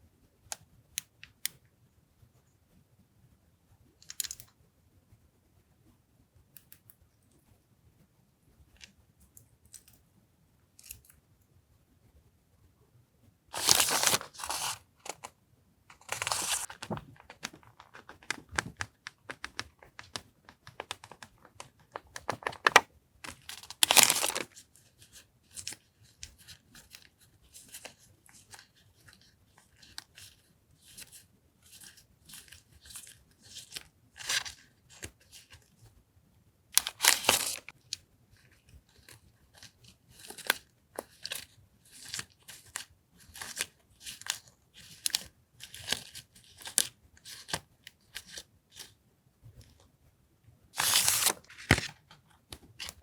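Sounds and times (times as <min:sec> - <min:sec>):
packaging rustling and tearing: 0:13.6 - 0:15.3, 0:15.9 - 0:24.6, 0:36.8 - 0:37.7, 0:50.8 - 0:52.0
short crinkles: 0:15.9 - 0:24.4.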